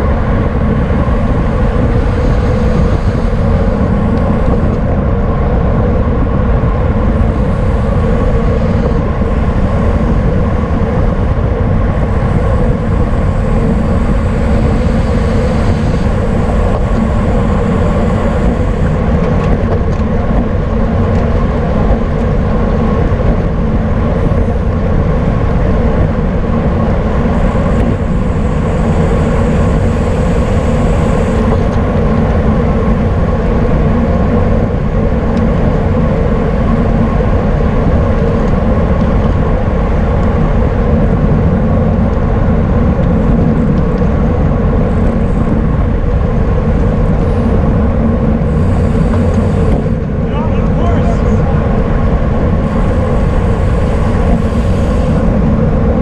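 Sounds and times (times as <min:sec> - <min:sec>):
wind rushing over microphone: 0:00.0 - 0:56.0
faint high whine: 0:06.7 - 0:19.5, 0:26.2 - 0:33.3.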